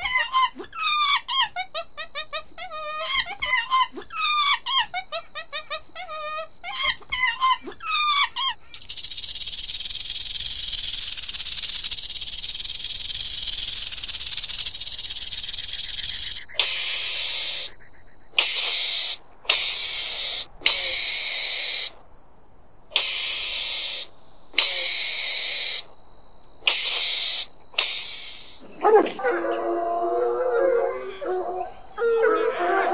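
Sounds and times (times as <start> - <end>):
animal hissing: 8.7 - 21.9, 22.9 - 25.8, 26.6 - 29.1.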